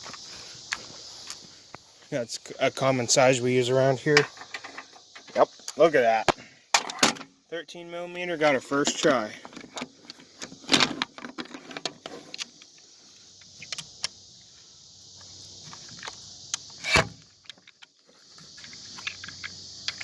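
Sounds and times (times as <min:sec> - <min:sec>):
steady high hiss: 0:00.0 - 0:20.0
metal clank: 0:06.7 - 0:07.5.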